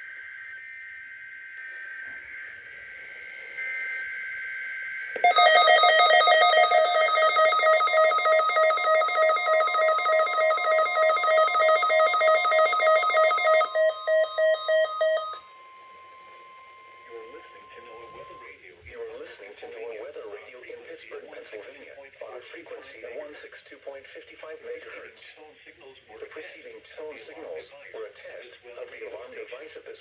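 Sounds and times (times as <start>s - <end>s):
choppy beeps: 5.2s - 15.4s
faint warbling data bursts: 5.2s - 15.4s
pulsing electronic alarm tone: 5.2s - 15.5s.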